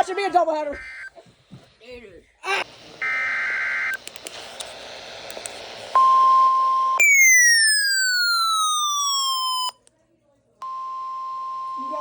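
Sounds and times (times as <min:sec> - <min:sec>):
steady alarm tone: 0:06.0 - 0:09.8
alarm gliding down in pitch: 0:07.0 - 0:09.8.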